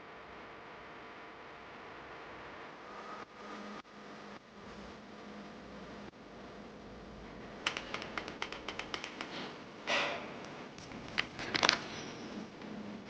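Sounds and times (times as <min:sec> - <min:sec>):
mechanical keyboard typing: 0:07.6 - 0:09.4.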